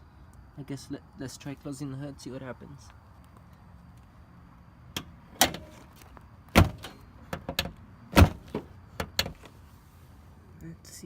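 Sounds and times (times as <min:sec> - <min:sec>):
car hood thudding shut: 0:06.5 - 0:09.4.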